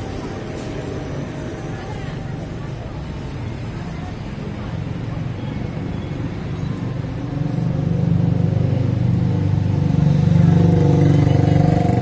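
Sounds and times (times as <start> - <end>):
vehicle engine running: 4.8 - 12.0.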